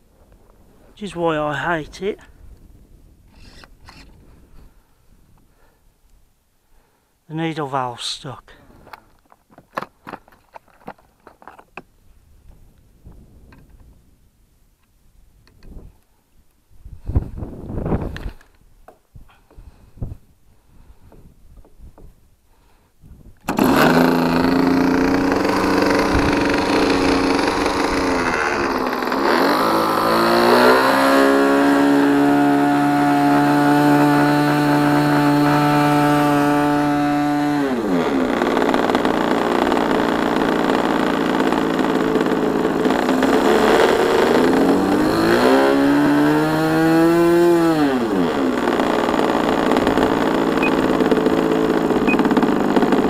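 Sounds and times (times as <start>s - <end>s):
model plane engine revving and idling: 23.4s - 53.0s.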